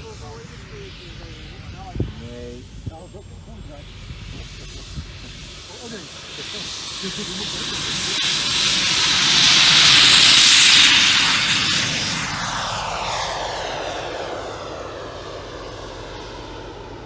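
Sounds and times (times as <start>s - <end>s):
model jet turbine whoosh: 0.0s - 15.8s.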